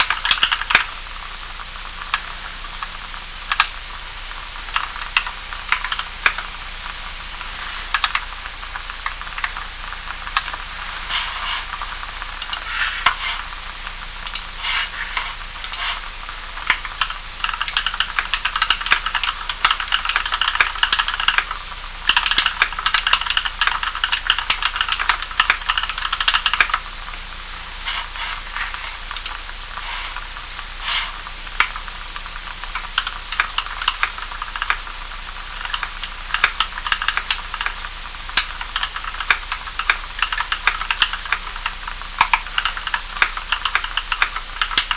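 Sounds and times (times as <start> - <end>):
mechanical keyboard typing: 0.0 - 0.9, 4.7 - 6.5, 14.2 - 26.8, 32.7 - 34.8, 35.6 - 37.8, 38.4 - 44.9
steady hiss: 0.0 - 44.9.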